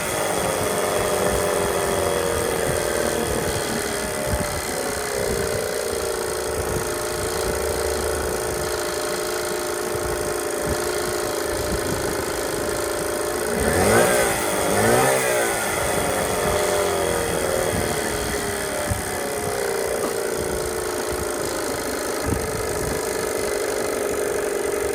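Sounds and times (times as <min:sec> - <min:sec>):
outboard motor idling and revving: 0:00.0 - 0:24.9.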